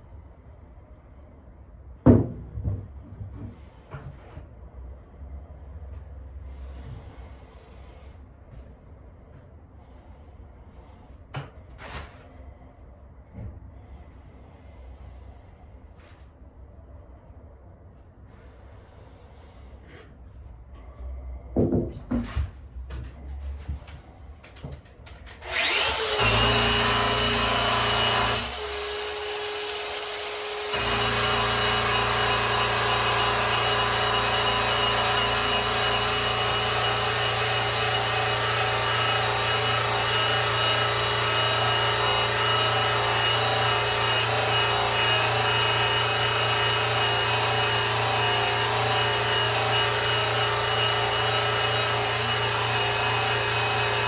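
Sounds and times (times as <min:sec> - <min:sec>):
electric polisher rubbing: 0:25.4 - 0:54.0.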